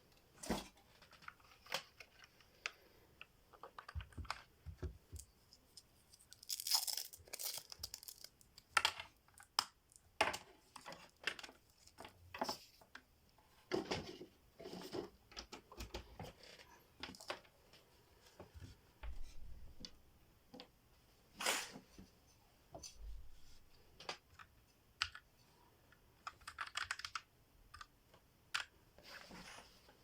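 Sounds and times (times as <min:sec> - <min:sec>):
packaging rustling and tearing: 0:06.1 - 0:08.6.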